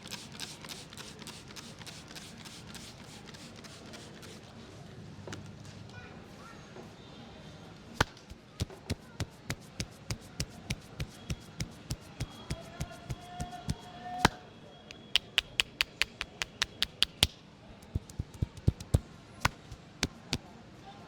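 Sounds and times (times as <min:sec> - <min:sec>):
hands slapping a head: 0:08.0 - 0:20.5.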